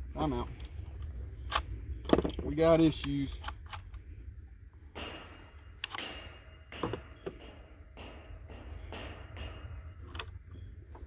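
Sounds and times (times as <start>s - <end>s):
steady low rumble: 0.0s - 11.0s
rifle action clicks and knocks: 1.5s - 4.0s, 5.8s - 6.1s, 10.0s - 11.0s.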